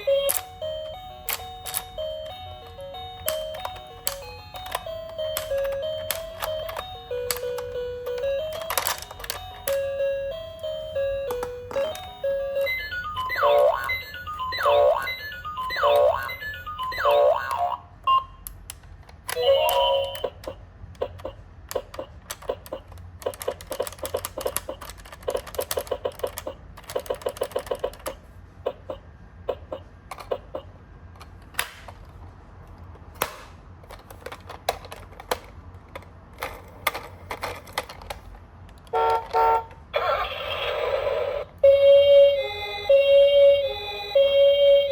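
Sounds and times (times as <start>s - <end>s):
toy electronic siren: 0.0s - 18.3s, 19.3s - 20.6s, 39.0s - 44.9s
toy cars rattling on cardboard: 23.0s - 28.1s, 33.8s - 38.4s.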